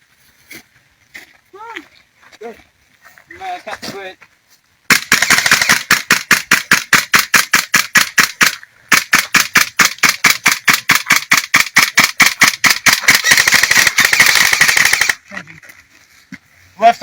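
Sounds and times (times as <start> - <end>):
airsoft gun rapid firing: 4.9 - 15.2.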